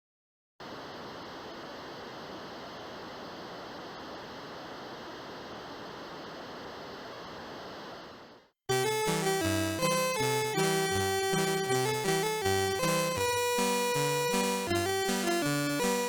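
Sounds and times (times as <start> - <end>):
static-like hiss: 0.6 - 16.0.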